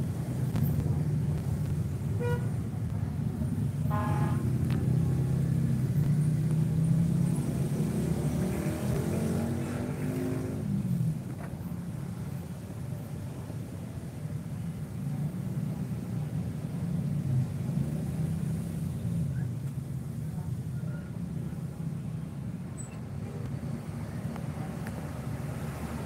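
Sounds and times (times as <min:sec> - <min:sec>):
diesel bus engine: 0:00.0 - 0:26.0
bus horn beep: 0:02.2 - 0:02.6, 0:03.9 - 0:04.5.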